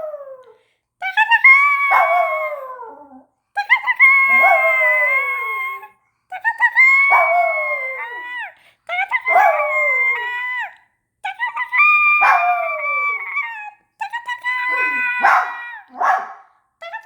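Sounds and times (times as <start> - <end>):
dog howling: 11.8 - 13.7, 14.7 - 16.4.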